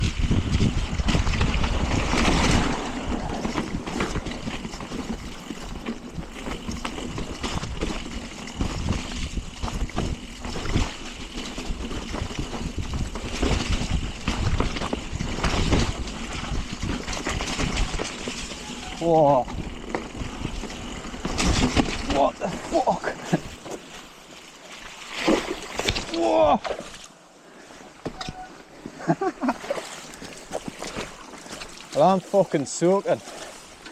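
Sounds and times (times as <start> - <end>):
wind buffeting microphone: 0.0 - 11.0
bike knocking and rattling: 0.0 - 27.0, 28.0 - 33.9
bike tyres splashing through water: 0.0 - 27.1, 29.1 - 33.9.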